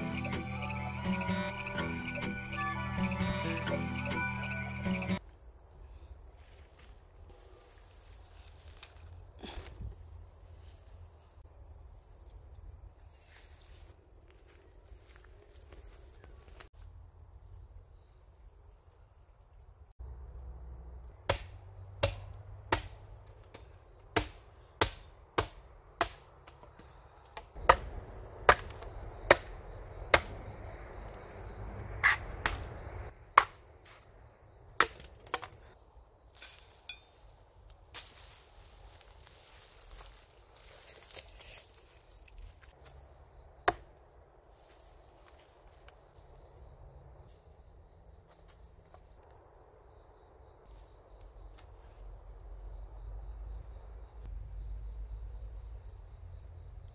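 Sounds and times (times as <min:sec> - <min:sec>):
crickets chirring: 0:00.0 - 0:56.9
sharp hammering knocks: 0:21.3 - 0:23.0, 0:24.2 - 0:26.2.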